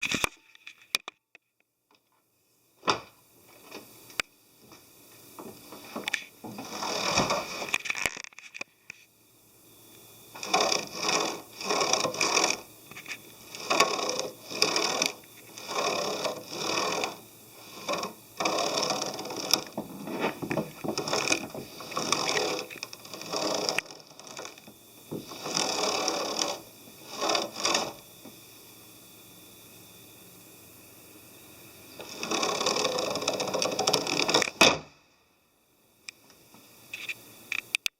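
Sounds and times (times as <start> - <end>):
tailgate struts creaking: 5.8 - 8.3, 10.4 - 17.2, 17.8 - 28.0, 32.0 - 34.8.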